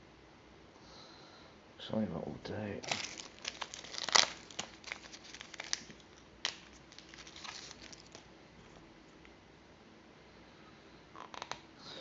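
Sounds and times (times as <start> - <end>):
plastic packaging crinkling: 2.8 - 8.3.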